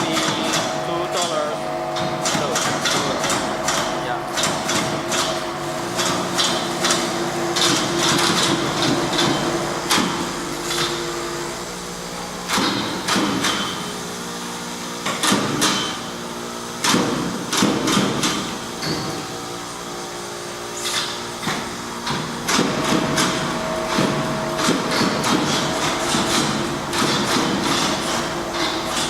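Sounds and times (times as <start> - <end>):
sharp knocks and clacks: 0.0 - 1.4, 2.0 - 5.4, 6.0 - 11.0, 12.5 - 13.8, 15.0 - 16.0, 16.8 - 19.1, 20.8 - 29.0
factory machinery humming: 0.0 - 29.0.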